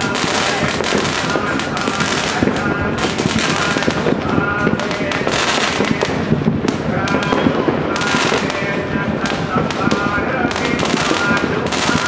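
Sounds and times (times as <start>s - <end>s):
fireworks bangs and crackles: 0.0s - 12.0s
voices: 0.0s - 12.0s.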